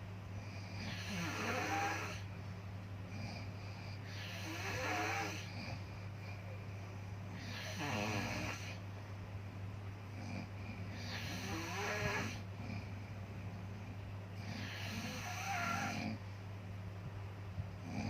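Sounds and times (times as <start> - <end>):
steady low hum: 0.0 - 18.0
person snoring: 0.6 - 2.3, 3.2 - 5.8, 7.3 - 8.8, 10.2 - 12.9, 14.4 - 16.2.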